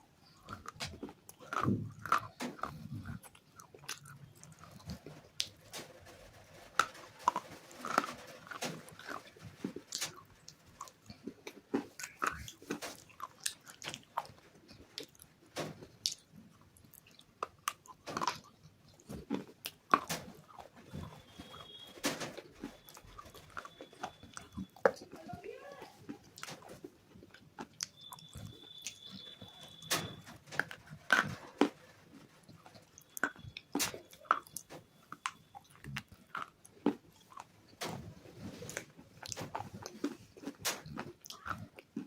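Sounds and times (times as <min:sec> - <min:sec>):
dull chewing thuds: 0:00.0 - 0:42.0
crunchy bars being bitten: 0:00.2 - 0:05.6, 0:06.8 - 0:21.8, 0:38.6 - 0:42.0.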